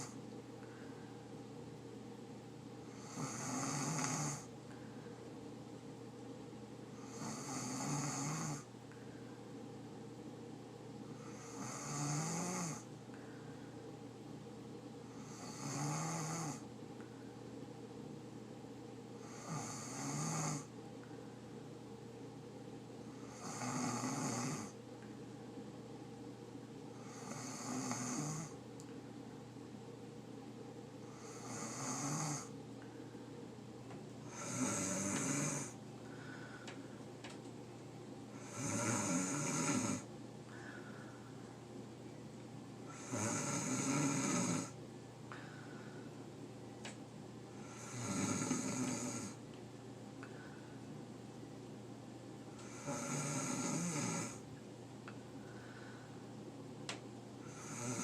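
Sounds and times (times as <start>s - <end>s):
person snoring: 0.0s - 0.8s, 2.9s - 4.5s, 6.9s - 8.7s, 11.1s - 12.9s, 15.0s - 16.6s, 19.2s - 20.7s, 23.0s - 24.8s, 27.0s - 28.6s, 31.0s - 32.5s, 34.2s - 36.6s, 38.3s - 41.0s, 42.9s - 44.8s, 47.6s - 49.4s, 52.6s - 54.4s, 57.4s - 58.0s
steady low hum: 0.0s - 58.0s.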